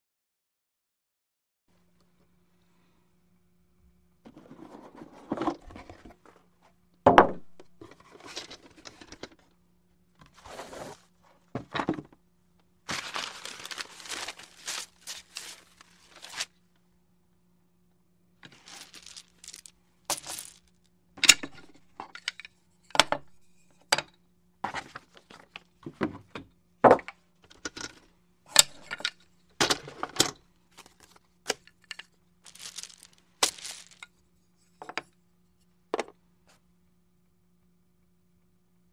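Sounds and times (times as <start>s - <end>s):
rustling and crinkling: 7.8s - 9.5s, 10.2s - 12.2s, 12.8s - 16.6s, 18.4s - 20.8s, 29.7s - 35.0s
game pieces clicking and knocking: 18.4s - 21.5s, 30.8s - 34.1s.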